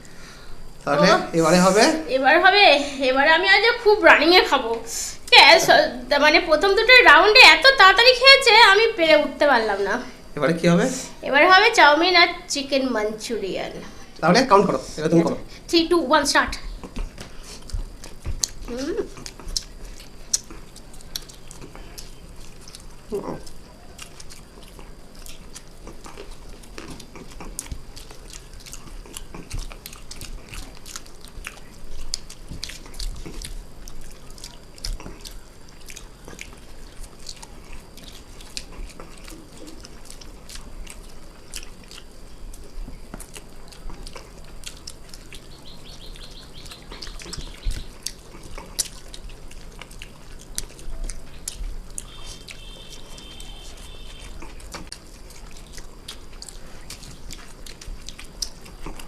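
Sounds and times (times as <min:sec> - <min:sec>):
people chewing noodles: 0:14.0 - 0:59.0.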